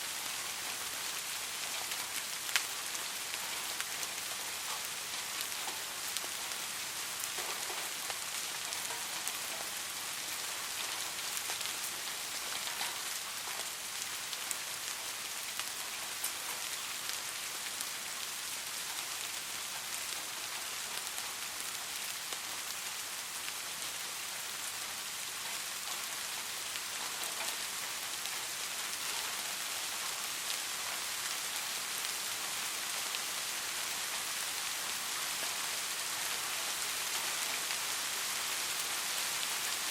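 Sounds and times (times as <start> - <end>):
soft rain falling: 0.0 - 39.9.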